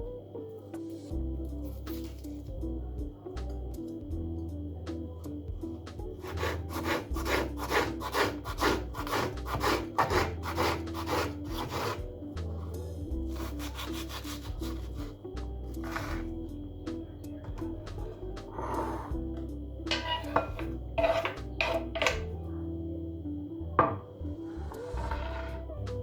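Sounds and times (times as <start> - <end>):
soft background music: 0.0 - 26.0
rubbing or scraping strokes: 15.8 - 16.3, 24.4 - 25.7.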